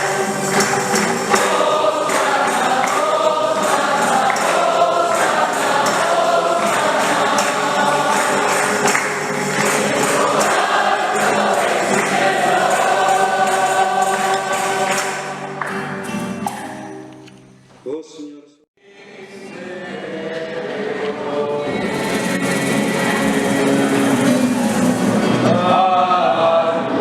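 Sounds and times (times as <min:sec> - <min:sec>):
jingling tambourine beat: 0:00.0 - 0:15.5, 0:21.9 - 0:25.4
choir singing a hymn: 0:00.0 - 0:15.7, 0:18.8 - 0:27.0.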